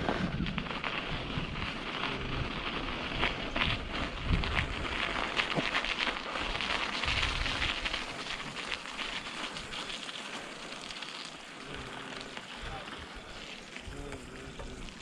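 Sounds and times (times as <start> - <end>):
wind rumble on microphone: 0.0 - 8.5
bicycle tyres crackling on road: 0.0 - 15.0.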